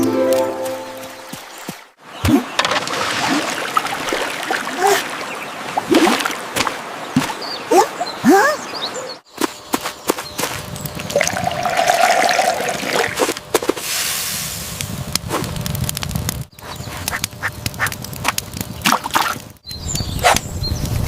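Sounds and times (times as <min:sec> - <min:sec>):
water splashing: 0:00.9 - 0:08.0.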